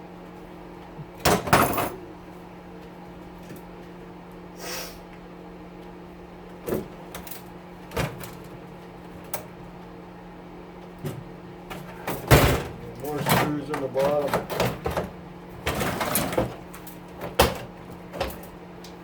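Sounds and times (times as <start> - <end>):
steady low hum: 0.0 - 19.0
metal oven parts clattering: 1.2 - 2.0, 11.0 - 18.6.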